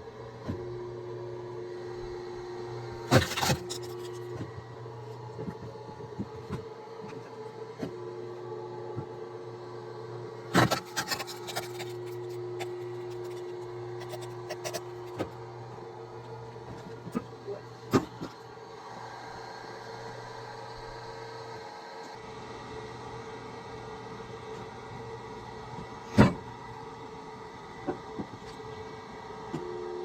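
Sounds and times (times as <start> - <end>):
machine humming: 8.0 - 18.0.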